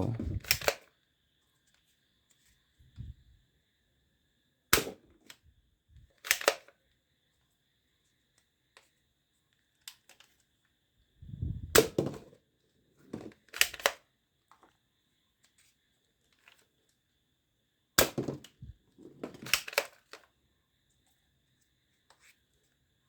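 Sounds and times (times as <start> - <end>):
toy guns clicking and snapping: 0.1 - 0.9, 6.2 - 6.8, 13.3 - 14.1, 19.4 - 20.3.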